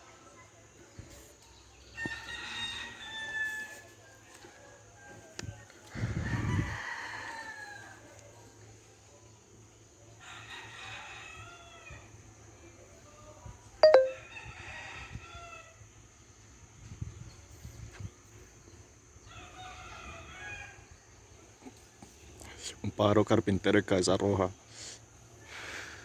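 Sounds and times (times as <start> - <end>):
rooster crowing: 2.0 - 3.7, 6.3 - 7.9.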